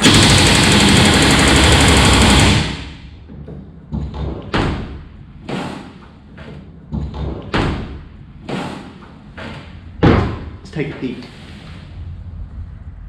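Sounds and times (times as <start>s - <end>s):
pneumatic rivet gun hammering: 0.0s - 2.8s
short thuds and knocks: 9.4s - 10.6s.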